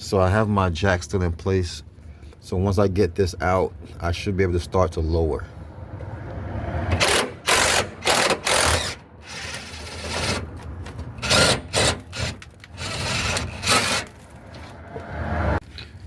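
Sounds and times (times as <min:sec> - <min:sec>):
power fastening tool bursts: 0:06.9 - 0:10.5, 0:11.2 - 0:14.1.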